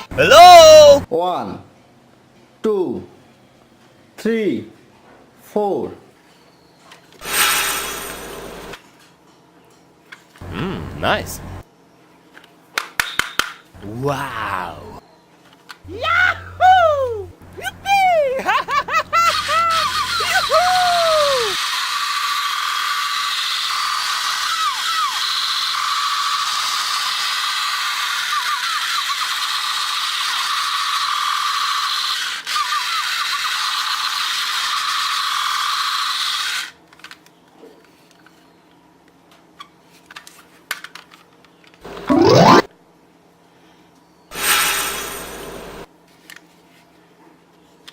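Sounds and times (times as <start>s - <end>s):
high voice calling out: 0.0s - 1.1s, 10.4s - 11.6s, 13.8s - 15.0s, 15.9s - 18.5s, 20.2s - 21.6s
toy gun mechanism rattling: 36.3s - 37.3s, 40.2s - 41.3s.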